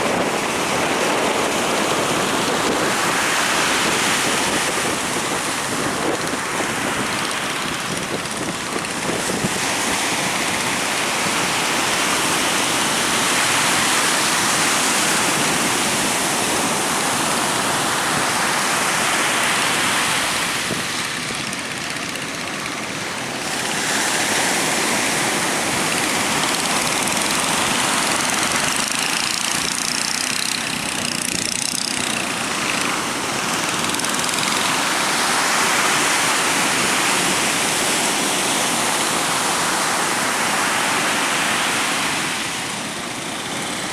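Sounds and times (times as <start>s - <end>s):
sea waves breaking: 0.0s - 43.9s
strong wind: 0.0s - 43.9s.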